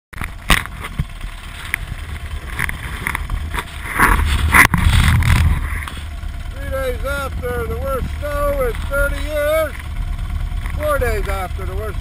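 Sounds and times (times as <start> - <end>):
sharp knocks and bumps: 0.2 - 6.1
motorcycle engine idling: 0.2 - 12.0
wind on microphone: 1.9 - 6.0.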